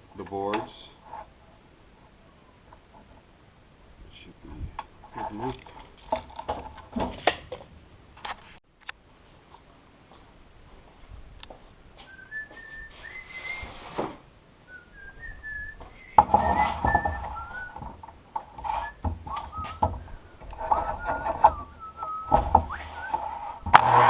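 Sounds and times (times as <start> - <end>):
tools and wood knocking: 4.8 - 8.6, 16.2 - 24.0
man whistling a tune: 12.0 - 13.7, 14.7 - 17.8, 18.8 - 23.6
steady hum with knocking: 14.9 - 24.0.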